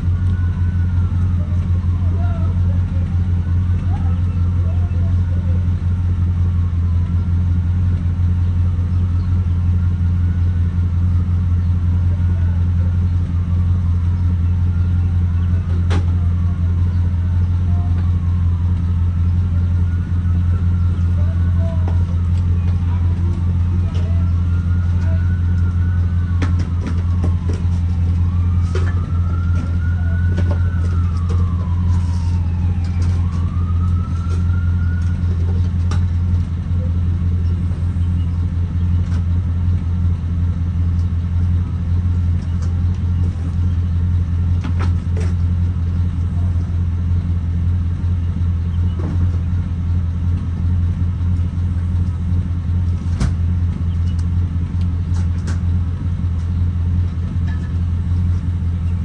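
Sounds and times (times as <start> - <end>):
truck engine droning: 0.0 - 59.0.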